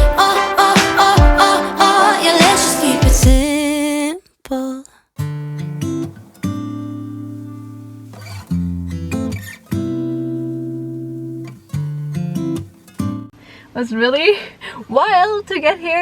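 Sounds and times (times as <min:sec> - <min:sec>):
acoustic guitar strumming: 0:00.0 - 0:03.8, 0:05.2 - 0:13.3
person singing pop song: 0:00.0 - 0:04.8.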